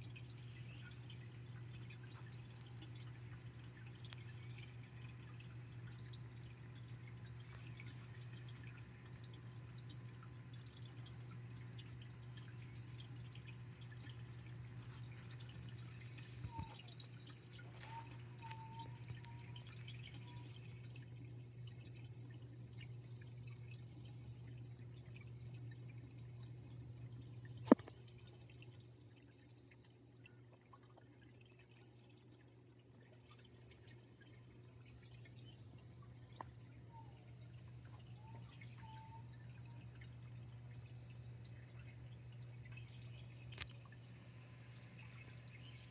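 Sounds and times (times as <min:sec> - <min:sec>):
low steady hum: 0:00.0 - 0:45.9
water trickling into pond: 0:00.0 - 0:45.9
faint short chirps: 0:17.6 - 0:19.6.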